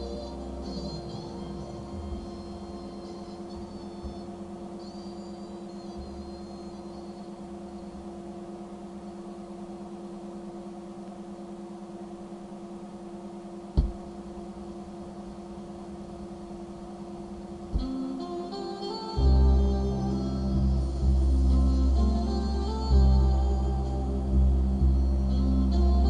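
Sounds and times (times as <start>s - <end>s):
faint rumble: 0.0s - 26.0s
hum of held tones: 0.0s - 26.0s
small knock: 13.8s - 14.0s
sharp thump: 13.8s - 14.1s.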